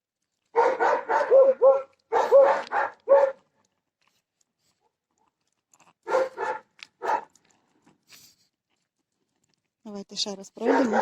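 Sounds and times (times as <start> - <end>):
dog barking: 0.5 - 3.4, 6.0 - 7.4, 10.6 - 11.0.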